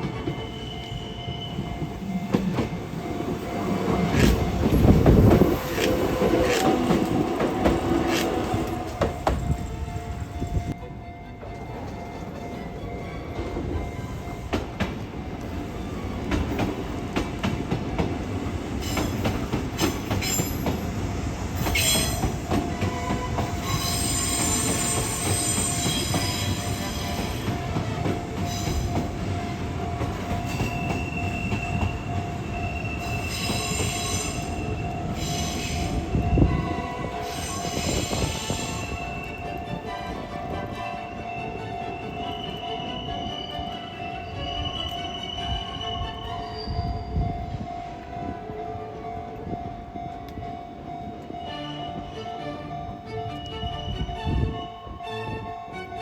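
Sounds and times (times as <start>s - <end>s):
train wheels squealing: 0.0s - 14.8s, 18.6s - 48.0s, 51.4s - 56.0s
level crossing warning bell: 0.0s - 15.4s, 21.8s - 56.0s
rumble of train cars: 0.0s - 56.0s.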